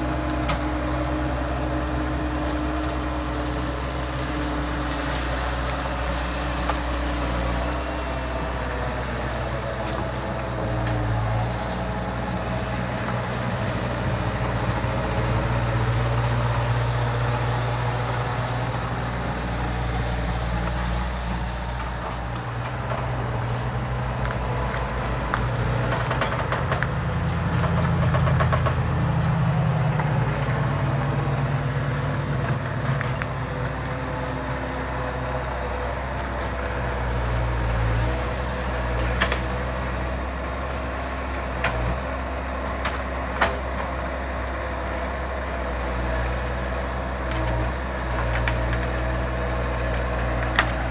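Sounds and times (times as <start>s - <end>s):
skid steer engine running: 0.0s - 50.9s.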